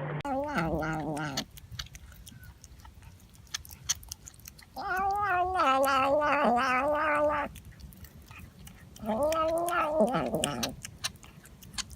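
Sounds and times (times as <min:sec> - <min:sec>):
cat yowling: 0:00.2 - 0:01.5, 0:04.8 - 0:07.6, 0:09.0 - 0:10.9.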